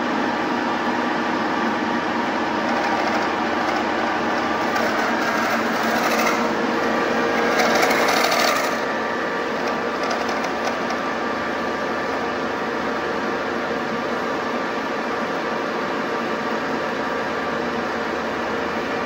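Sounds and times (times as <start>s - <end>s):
metal lathe running: 1.1s - 15.1s.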